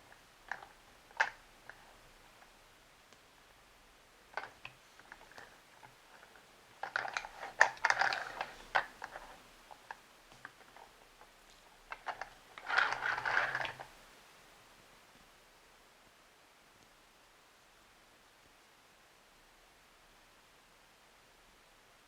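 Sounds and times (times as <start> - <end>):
crinkling handling noise: 4.3 - 14.0.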